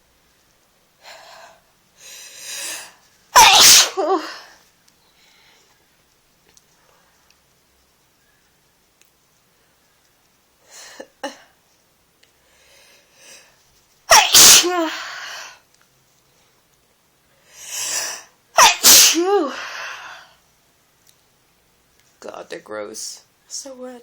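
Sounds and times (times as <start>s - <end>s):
drawn breath: 1.0s - 3.0s, 12.4s - 13.6s
person sneezing: 2.5s - 4.5s, 14.1s - 15.6s, 17.8s - 20.0s.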